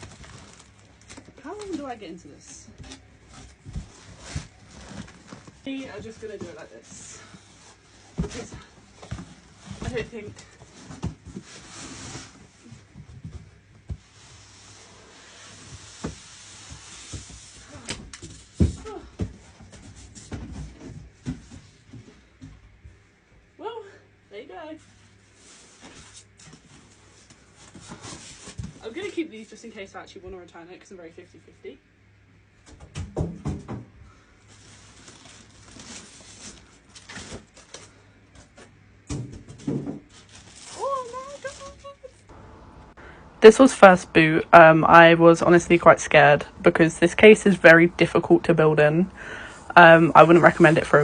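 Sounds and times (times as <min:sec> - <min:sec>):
packaging rustling and scraping: 0:00.0 - 0:01.9, 0:02.8 - 0:06.7, 0:07.4 - 0:18.7, 0:25.1 - 0:28.8, 0:34.4 - 0:38.8, 0:39.5 - 0:42.3.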